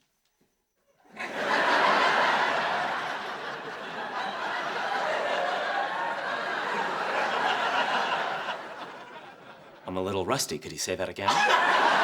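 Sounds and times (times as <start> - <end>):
studio audience laughing: 1.1 - 9.8, 11.3 - 12.0.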